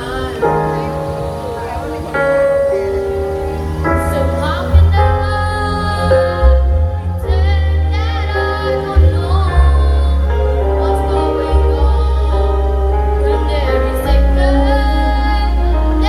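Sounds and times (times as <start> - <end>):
woman singing with vibrato: 0.0 - 1.6, 3.8 - 16.0
music with heavy bass: 3.4 - 16.0.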